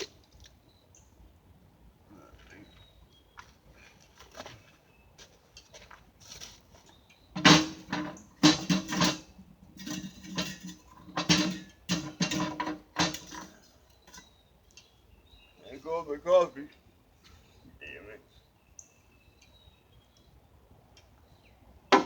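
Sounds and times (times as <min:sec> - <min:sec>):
tool scraping metal: 0:07.4 - 0:13.6.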